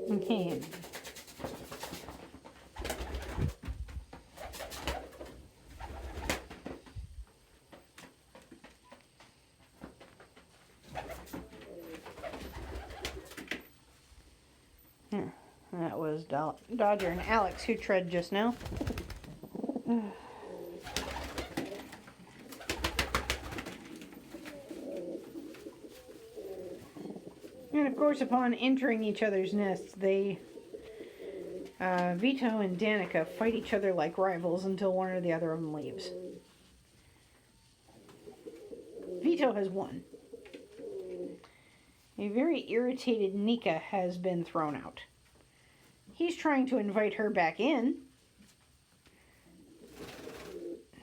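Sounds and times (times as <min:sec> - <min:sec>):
pigeons cooing: 0:00.0 - 0:00.9, 0:10.9 - 0:13.4, 0:18.6 - 0:28.4, 0:29.5 - 0:31.8, 0:35.6 - 0:36.5, 0:38.0 - 0:41.4, 0:49.5 - 0:51.0
scuffling and rustling: 0:20.8 - 0:27.9.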